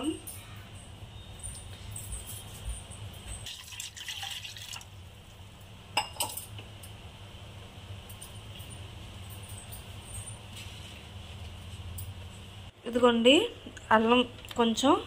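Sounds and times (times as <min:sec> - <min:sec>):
water poured into a bowl: 0:03.4 - 0:04.9.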